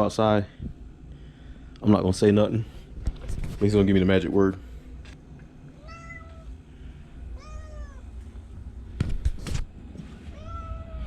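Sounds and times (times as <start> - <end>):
cat meowing: 5.8 - 6.5, 7.4 - 8.1, 10.3 - 11.0.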